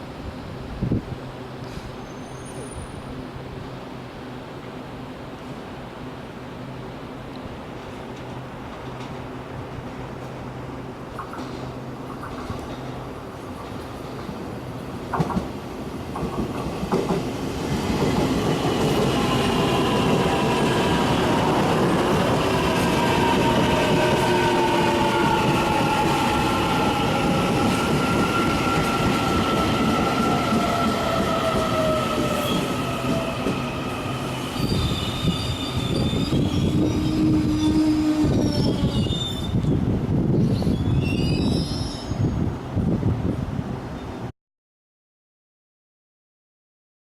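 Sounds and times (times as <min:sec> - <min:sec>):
train wheels rumbling on rails: 0:07.7 - 0:42.3.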